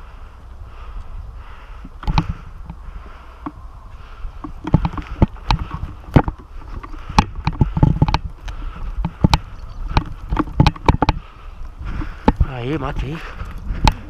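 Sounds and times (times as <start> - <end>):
wind on microphone: 0.0 - 14.0
microphone handling noise: 4.3 - 12.5.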